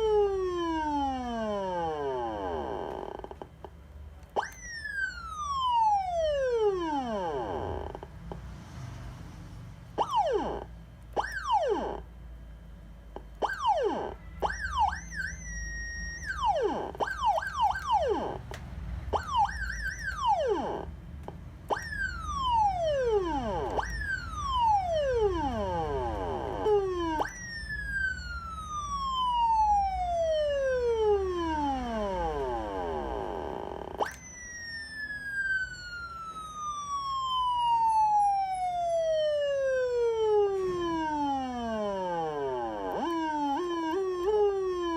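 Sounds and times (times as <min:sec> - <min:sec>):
electronic motorcycle siren: 0:00.0 - 0:44.9.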